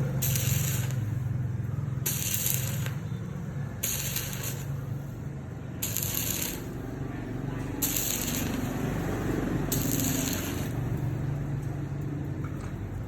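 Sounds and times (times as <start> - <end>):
welding arc hissing: 0.0 - 7.1, 7.7 - 11.0.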